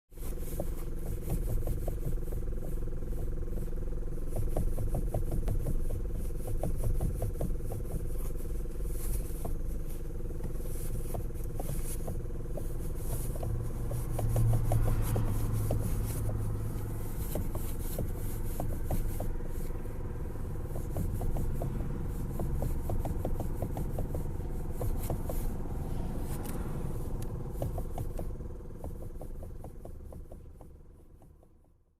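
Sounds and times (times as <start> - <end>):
steady low rumble: 7.6 - 31.1.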